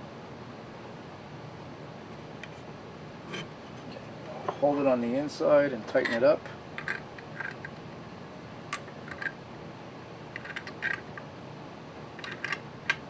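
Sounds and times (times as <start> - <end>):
steady low hiss: 0.0 - 13.0.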